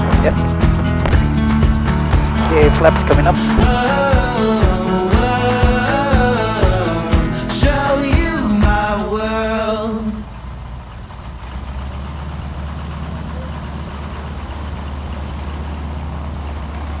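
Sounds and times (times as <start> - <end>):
song: 0.0 - 10.2.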